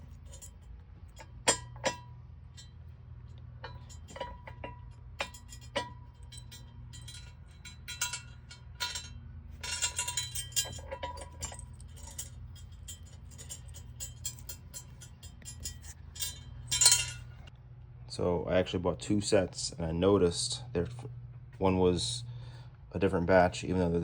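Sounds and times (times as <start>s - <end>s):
metal clicks and clinks: 0.0s - 2.8s, 3.6s - 17.5s.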